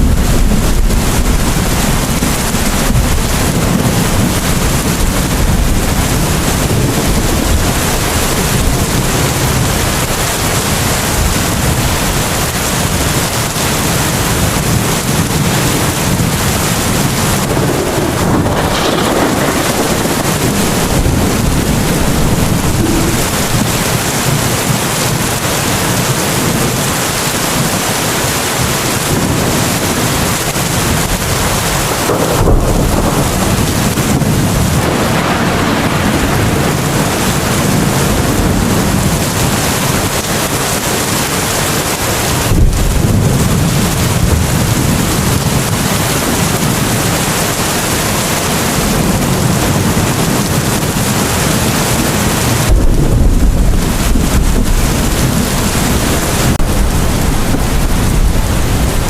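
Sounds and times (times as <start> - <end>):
low rumbling: 0.0 - 26.7, 30.3 - 37.8, 49.1 - 59.0
heavy rain: 0.0 - 59.0.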